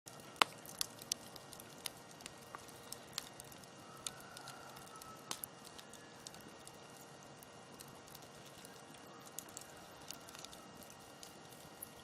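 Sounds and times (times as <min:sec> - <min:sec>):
campfire crackling and popping: 0:00.1 - 0:12.0.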